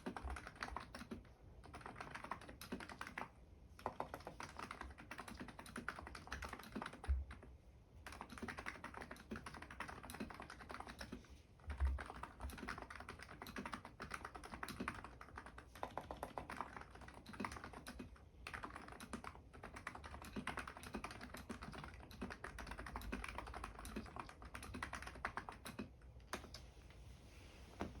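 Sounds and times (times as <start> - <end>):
keyboard typing: 0.0 - 26.6.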